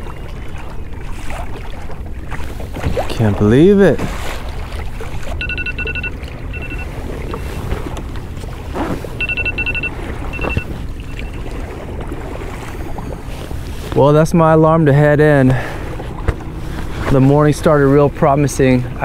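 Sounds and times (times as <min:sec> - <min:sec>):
water noise: 0:00.0 - 0:19.0
wind: 0:00.0 - 0:19.0
electronic alarm beeping: 0:05.4 - 0:07.6, 0:09.2 - 0:11.6.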